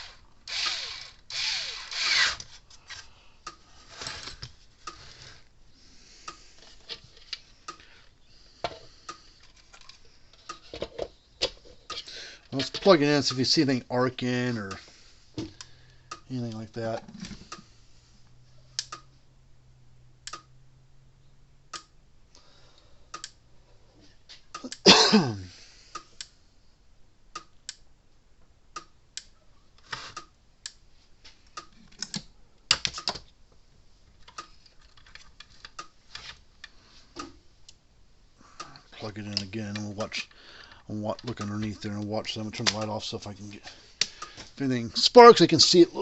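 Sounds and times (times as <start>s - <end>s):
electric fence ticking: 20.2s - 20.6s.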